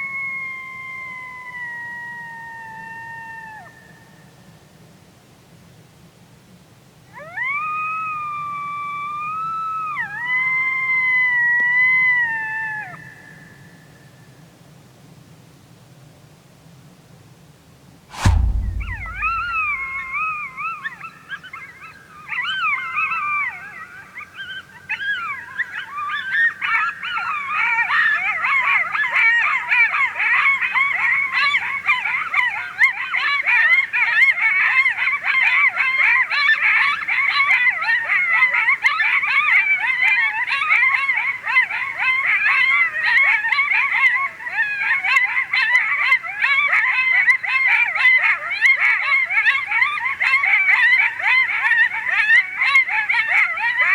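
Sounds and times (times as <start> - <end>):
coyotes yipping and howling: 21.0 - 53.9.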